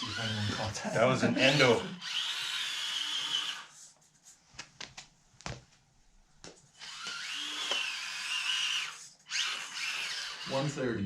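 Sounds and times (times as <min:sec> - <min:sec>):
small electric motor whining: 0:00.0 - 0:03.8, 0:06.8 - 0:10.9.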